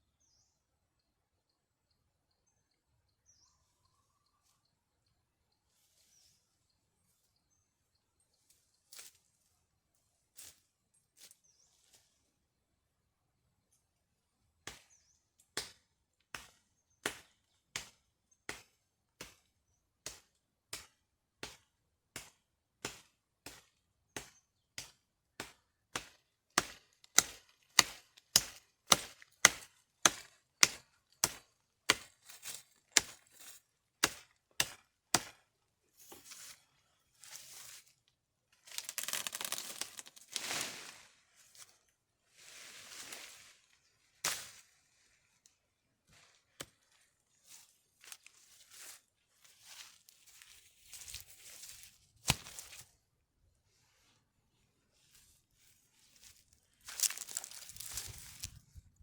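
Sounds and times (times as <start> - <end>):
blade chopping: 22.9 - 33.2
scraping rustling noise: 54.9 - 58.8.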